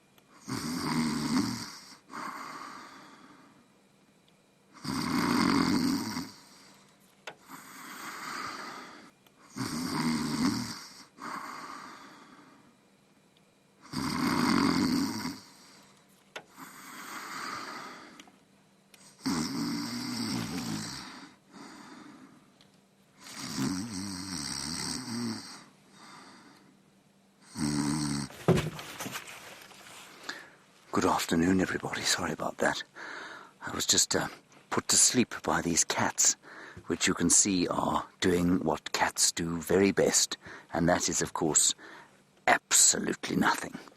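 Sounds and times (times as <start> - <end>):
loud rasping snore: 0.4 - 2.4, 4.8 - 6.6, 9.5 - 11.1, 13.8 - 15.8, 19.0 - 21.2, 23.2 - 25.7, 27.5 - 28.3
soft breath: 2.1 - 3.7, 11.2 - 12.8, 20.4 - 22.5, 25.6 - 26.8, 28.9 - 30.8, 32.9 - 33.6, 36.4 - 36.9, 41.8 - 42.2.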